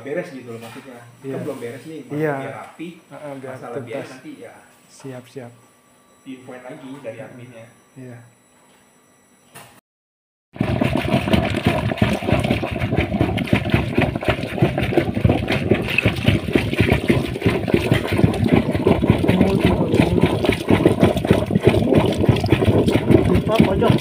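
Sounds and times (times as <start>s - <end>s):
demolition hammer chipping concrete: 10.6s - 24.0s.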